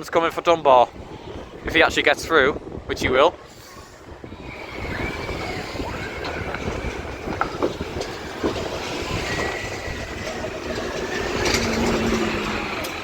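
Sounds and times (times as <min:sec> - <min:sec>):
large vehicle rumbling past: 0:00.0 - 0:13.0
high-pitched squeals: 0:03.4 - 0:13.0.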